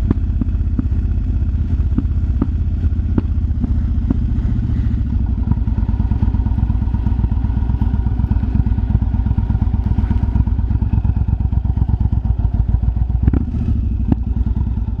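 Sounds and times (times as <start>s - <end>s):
sharp exhaust pops: 0.0s - 14.5s
motorcycle engine running: 0.0s - 15.0s.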